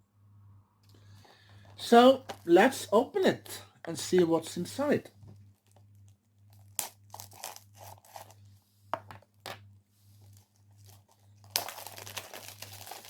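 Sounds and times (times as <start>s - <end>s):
plastic shrink-wrap tearing: 6.6s - 8.4s, 10.8s - 13.0s
plastic crinkling: 10.2s - 13.0s.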